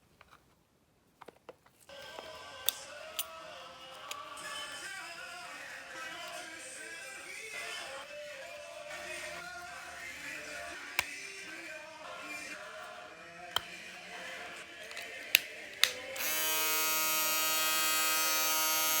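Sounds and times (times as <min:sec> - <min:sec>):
background music: 0:01.9 - 0:19.0
electric shaver buzzing: 0:15.8 - 0:19.0.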